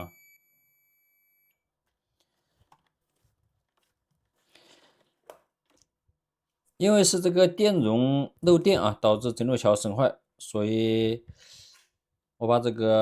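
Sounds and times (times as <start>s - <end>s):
multimeter continuity beep: 0.0s - 1.6s.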